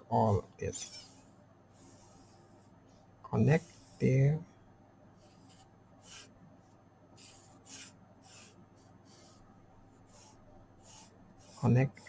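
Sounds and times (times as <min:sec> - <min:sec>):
pencil drawing on paper: 0:00.7 - 0:02.8, 0:03.4 - 0:04.3, 0:05.2 - 0:06.4, 0:07.2 - 0:12.0.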